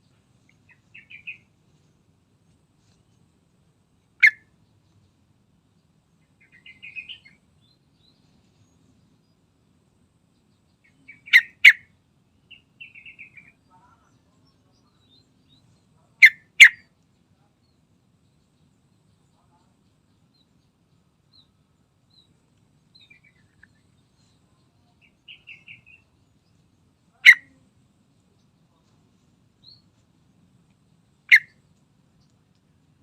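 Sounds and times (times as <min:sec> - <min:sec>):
bird soft chattering: 0:00.6 - 0:01.5
bird calling sharp notes: 0:04.2 - 0:04.5, 0:11.1 - 0:11.8, 0:27.2 - 0:27.6, 0:31.3 - 0:31.6.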